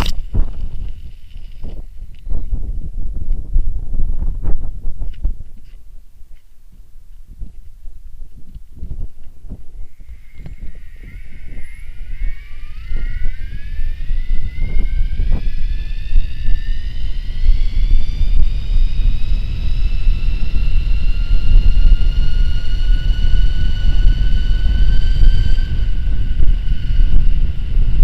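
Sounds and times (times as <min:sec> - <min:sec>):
wind rumble on microphone: 0:00.0 - 0:28.0
electric bike motor whining: 0:09.6 - 0:28.0.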